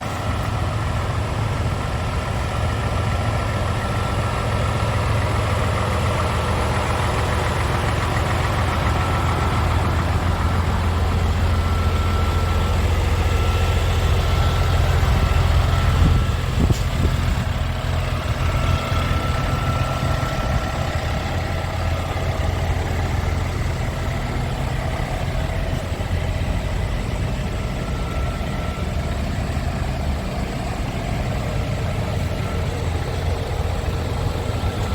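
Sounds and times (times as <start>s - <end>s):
diesel truck engine idling: 0.0s - 34.9s.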